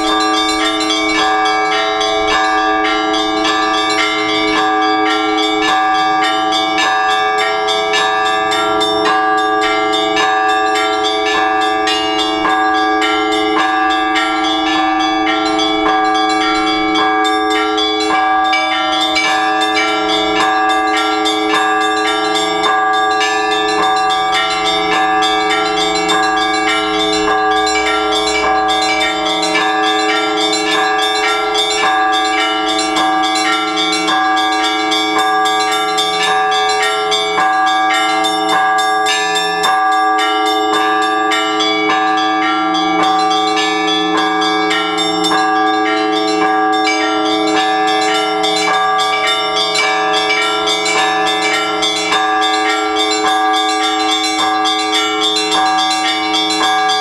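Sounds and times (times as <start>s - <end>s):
church bells pealing: 0.0s - 57.0s.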